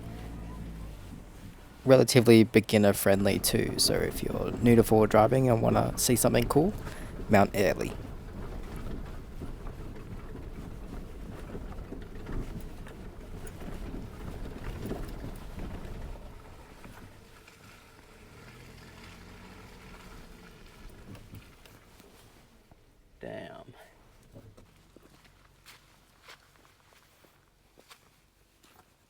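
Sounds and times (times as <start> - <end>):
car engine running: 0.0 - 22.0
tyres on rocky track: 0.0 - 26.9.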